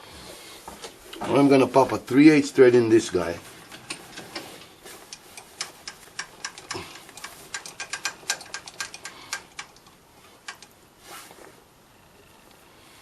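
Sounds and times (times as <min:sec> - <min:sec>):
small metal parts knocking together: 0:05.2 - 0:10.8.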